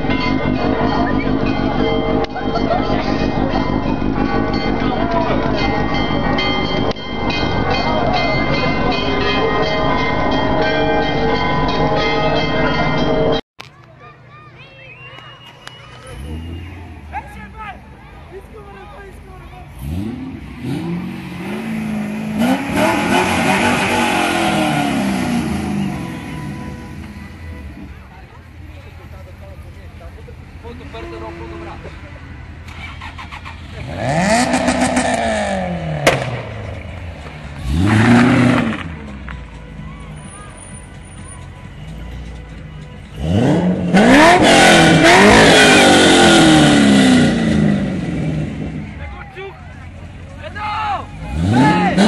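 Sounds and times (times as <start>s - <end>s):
sports car engine revving: 19.6s - 27.3s, 32.6s - 39.3s, 43.1s - 49.0s, 51.1s - 52.0s.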